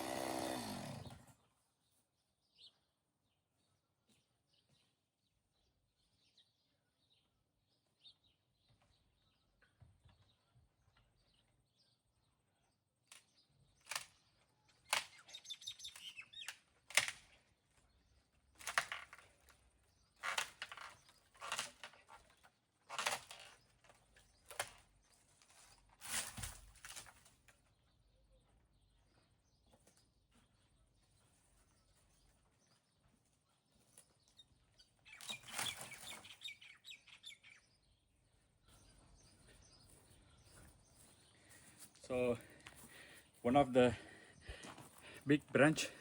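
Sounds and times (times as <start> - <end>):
dry branches rustling: 20.2 - 27.5, 35.1 - 36.4.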